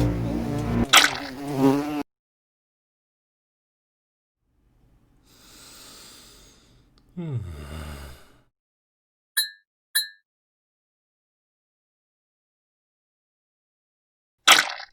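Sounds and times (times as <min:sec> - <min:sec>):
short high beeps: 0:09.4 - 0:10.2.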